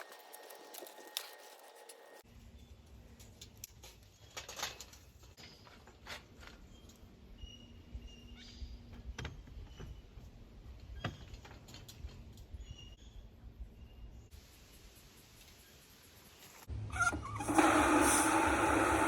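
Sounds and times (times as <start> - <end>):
faint small birds chirping: 6.6 - 16.7.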